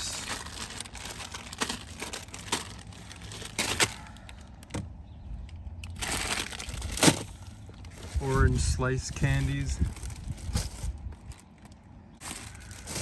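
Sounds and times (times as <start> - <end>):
plastic wrappers crinkling: 0.0 - 4.6, 5.8 - 13.0.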